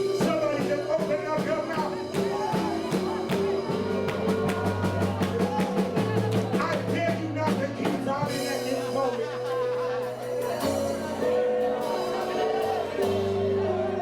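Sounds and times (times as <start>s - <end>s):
drum beat: 0.0s - 14.0s
held bass notes: 0.0s - 14.0s
worship band music: 0.0s - 14.0s.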